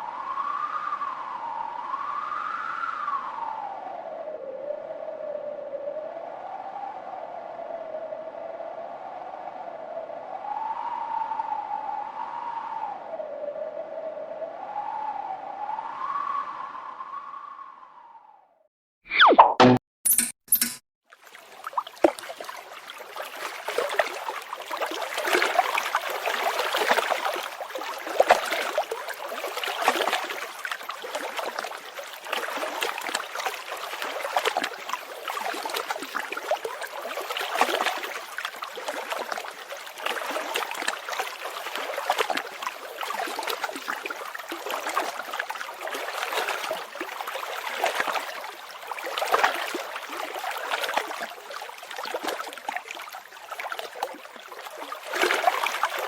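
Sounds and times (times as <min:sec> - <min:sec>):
stream trickling and gurgling: 0:21.0 - 0:56.0.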